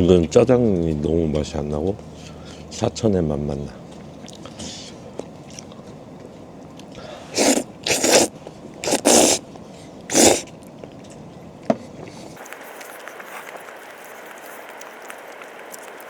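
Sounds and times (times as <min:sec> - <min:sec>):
person slurping noodles: 0:07.3 - 0:09.4, 0:10.1 - 0:10.5.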